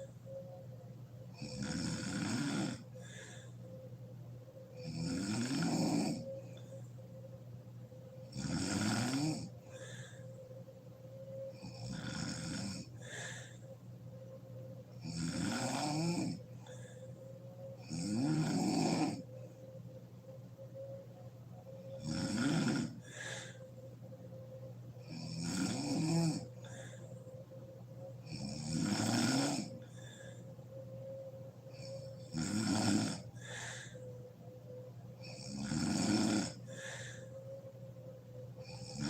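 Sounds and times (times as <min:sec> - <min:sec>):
faint steady hum: 0:00.0 - 0:39.0
woman snoring: 0:01.3 - 0:03.6, 0:04.7 - 0:06.8, 0:08.2 - 0:10.4, 0:11.4 - 0:13.7, 0:14.9 - 0:19.3, 0:21.7 - 0:23.8, 0:25.0 - 0:27.3, 0:28.2 - 0:30.5, 0:31.7 - 0:34.1, 0:35.2 - 0:37.4, 0:38.6 - 0:39.0
soft breath: 0:02.8 - 0:04.4, 0:09.4 - 0:11.6, 0:12.7 - 0:14.9, 0:16.4 - 0:17.8, 0:22.9 - 0:25.0, 0:26.4 - 0:28.2, 0:29.7 - 0:32.2, 0:33.2 - 0:35.3, 0:36.5 - 0:38.8.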